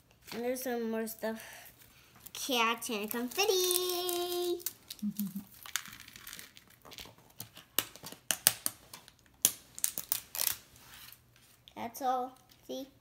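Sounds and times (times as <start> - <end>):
plastic packaging crinkling: 2.2 - 10.6.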